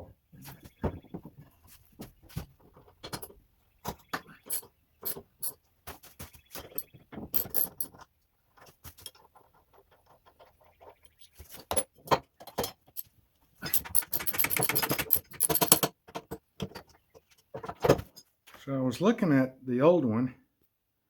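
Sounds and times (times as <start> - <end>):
metal tools clicking and clinking: 4.4 - 5.6, 6.6 - 8.1, 11.2 - 16.0.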